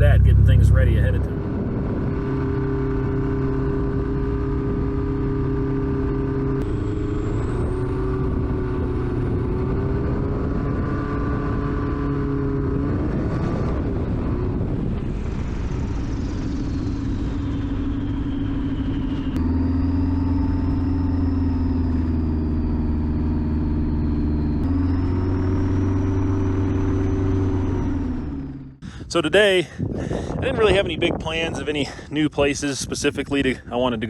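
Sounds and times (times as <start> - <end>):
light aircraft engine droning: 0.0 - 2.0, 13.6 - 32.0.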